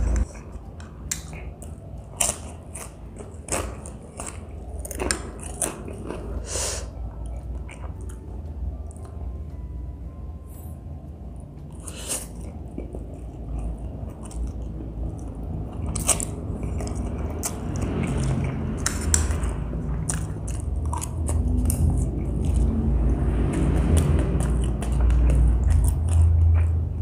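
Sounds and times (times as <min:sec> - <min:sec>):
low rumble: 0:00.0 - 0:27.0
chewing noodles: 0:00.1 - 0:06.5, 0:11.8 - 0:27.0.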